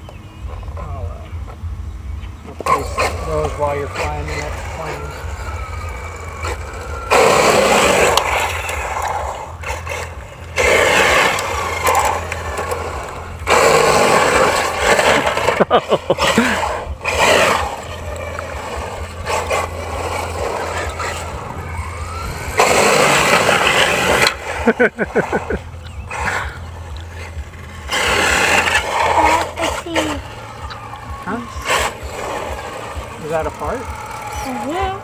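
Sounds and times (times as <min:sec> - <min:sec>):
rc car motor running: 0:00.0 - 0:35.0
rc car wheels scraping asphalt: 0:00.0 - 0:35.0.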